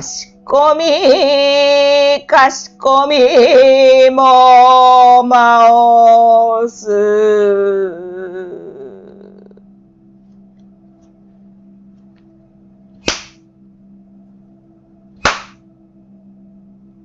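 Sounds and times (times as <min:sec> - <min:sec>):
faint steady drone: 0:00.0 - 0:17.0
sharp hand claps: 0:13.1 - 0:13.4, 0:15.2 - 0:15.6.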